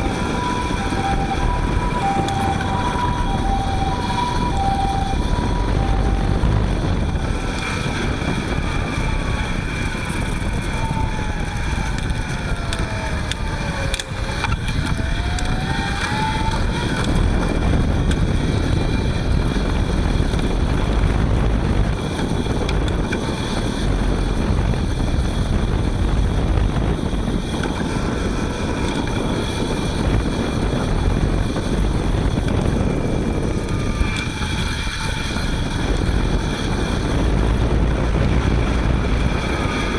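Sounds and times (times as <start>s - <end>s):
motor whine: 0.0s - 18.8s
road noise: 0.0s - 39.9s.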